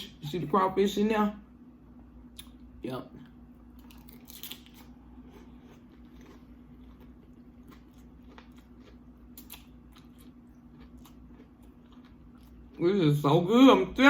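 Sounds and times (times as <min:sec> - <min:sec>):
chewing and crunching chips: 0:03.2 - 0:13.5.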